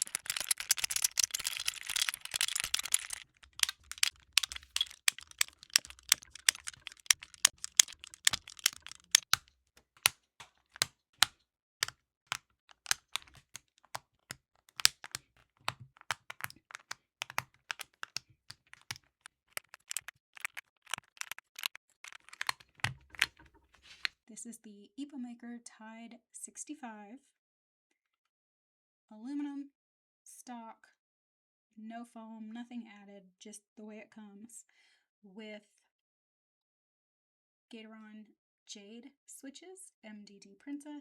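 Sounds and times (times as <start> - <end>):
mechanical keyboard switches clacking: 0.0 - 10.1, 12.7 - 14.0, 14.7 - 19.0.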